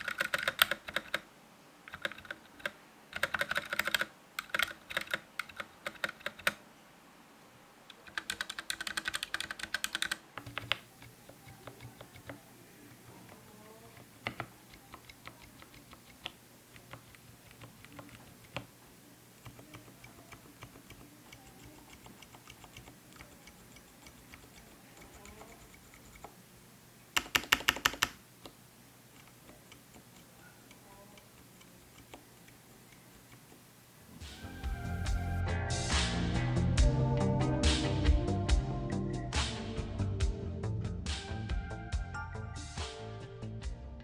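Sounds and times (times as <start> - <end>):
soft keyboard keystrokes: 0.0 - 1.3, 1.9 - 6.6, 7.9 - 26.4, 27.1 - 35.3.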